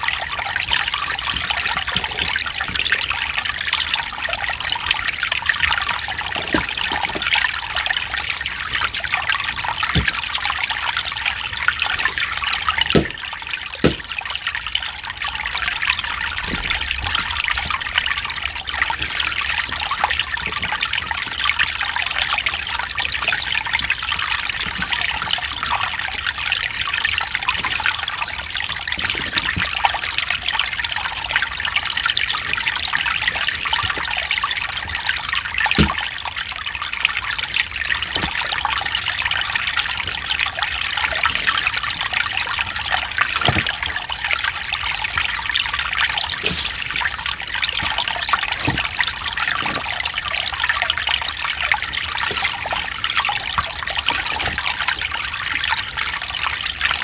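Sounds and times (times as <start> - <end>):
stream flowing: 0.0 - 57.0
water plops and gurgles: 0.0 - 57.0.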